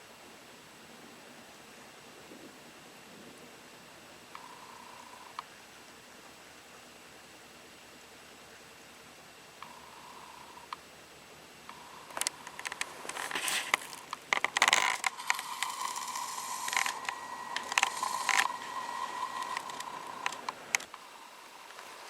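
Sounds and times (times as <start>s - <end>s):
high thin whine: 9.5s - 22.0s
handling clicks and scrapes: 12.0s - 21.0s.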